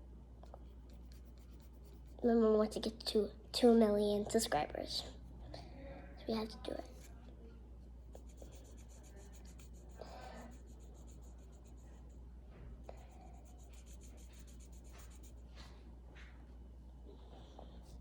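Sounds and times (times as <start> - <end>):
low electrical hum: 0.0 - 18.0
drawing tool scratching paper: 8.2 - 11.9, 12.9 - 15.4.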